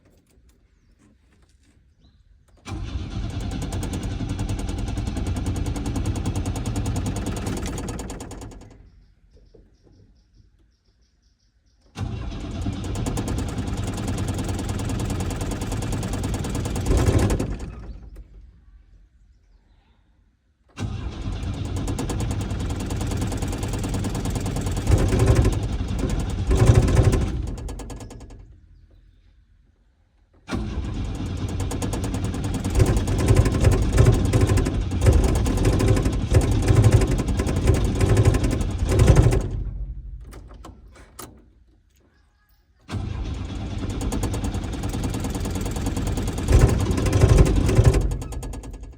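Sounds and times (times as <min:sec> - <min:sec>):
car starter cranking: 0:02.5 - 0:09.1, 0:11.9 - 0:18.5, 0:20.7 - 0:28.8, 0:30.4 - 0:41.8, 0:42.8 - 0:48.9.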